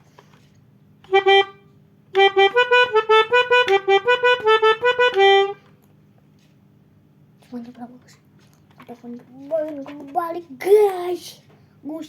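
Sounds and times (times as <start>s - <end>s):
melodica playing notes: 1.0s - 5.7s.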